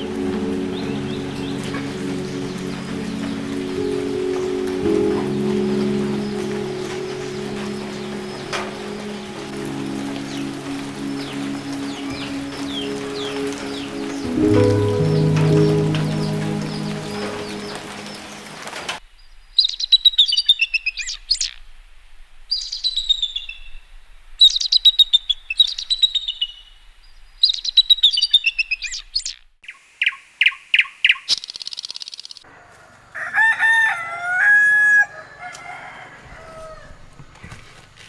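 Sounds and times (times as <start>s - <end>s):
birds chirping and whistling: 0.0s - 18.8s
rooster crowing: 32.5s - 37.2s.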